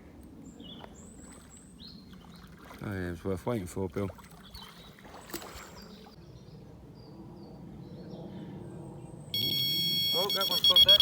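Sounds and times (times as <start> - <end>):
faint high chirps: 9.4 - 11.0.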